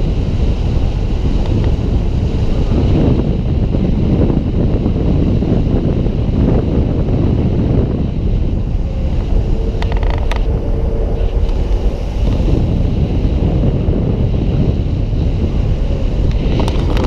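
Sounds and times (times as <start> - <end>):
vehicle rumbling on road: 0.0 - 17.0
wind buffeting microphone: 0.0 - 17.0.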